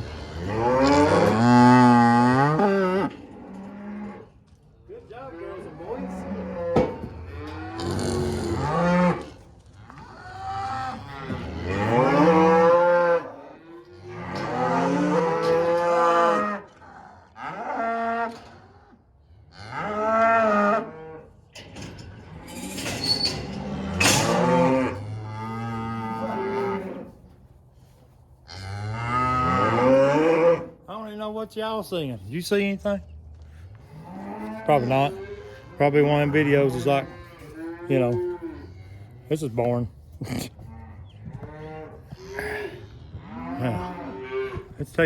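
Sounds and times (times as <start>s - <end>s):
cattle mooing: 0.0s - 4.3s, 5.6s - 18.4s, 22.2s - 27.1s, 28.5s - 30.7s, 33.7s - 39.2s, 40.2s - 44.7s.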